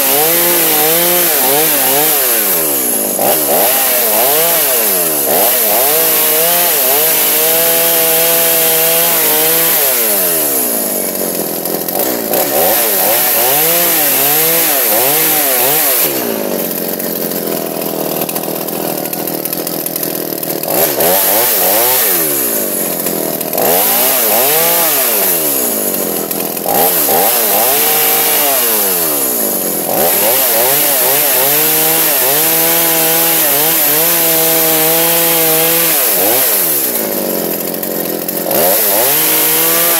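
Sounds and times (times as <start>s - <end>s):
chainsaw revving and idling: 0.0s - 39.9s.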